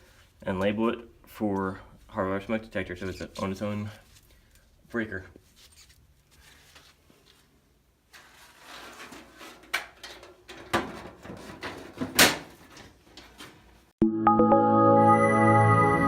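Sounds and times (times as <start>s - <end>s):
metal cover scraping and rattling: 8.2s - 13.6s
music: 14.0s - 16.0s.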